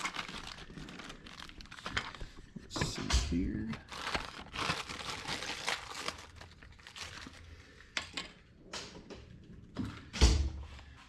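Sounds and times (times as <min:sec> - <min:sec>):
crinkling and rustling: 0:00.0 - 0:11.0.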